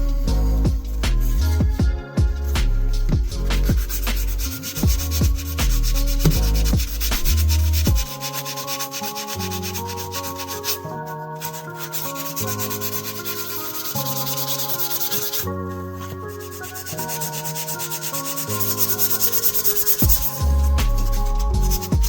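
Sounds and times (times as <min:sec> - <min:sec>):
heavy bass: 0:00.0 - 0:08.1, 0:20.0 - 0:22.0
background music: 0:00.0 - 0:22.0
knife blade sanded on sandpaper: 0:02.5 - 0:22.0.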